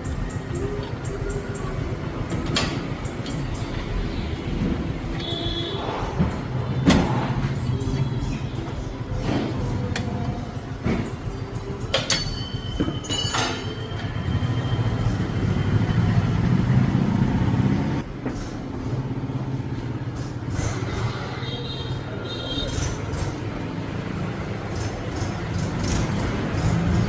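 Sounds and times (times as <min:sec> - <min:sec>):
brake squeal: 0:00.0 - 0:23.8.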